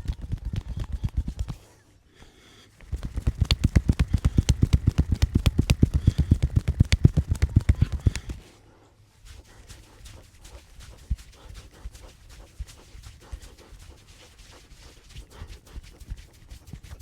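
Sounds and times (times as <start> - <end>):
hands tapping and slapping head: 0.0 - 1.6, 2.8 - 8.4.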